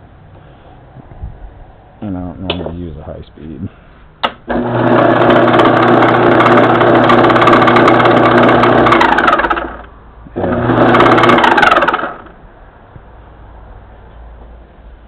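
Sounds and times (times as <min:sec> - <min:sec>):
metal lathe whirring: 0:04.5 - 0:09.6, 0:10.4 - 0:12.1.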